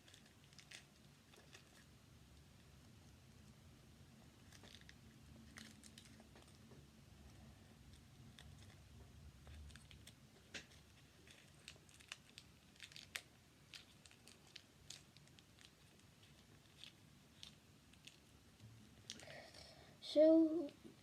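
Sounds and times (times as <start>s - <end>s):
tape and cardboard crinkles: 9.5s - 18.2s.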